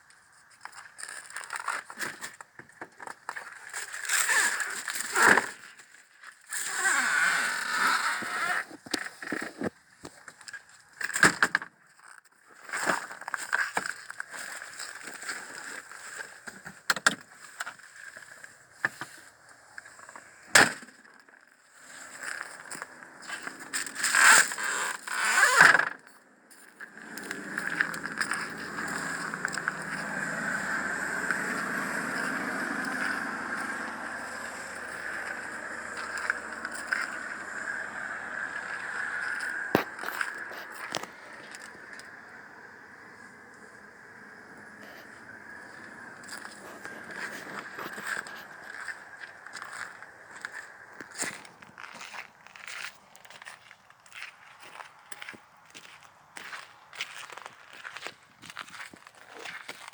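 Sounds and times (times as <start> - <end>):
golf cart running with low hum: 26.8 - 51.7.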